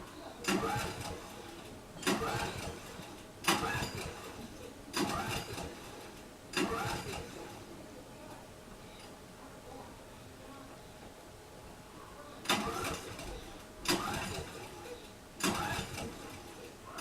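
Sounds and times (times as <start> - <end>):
snowmobile engine cranking: 0.5 - 1.2, 2.0 - 2.9, 3.5 - 4.3, 6.6 - 7.4, 13.9 - 14.7, 15.4 - 16.4.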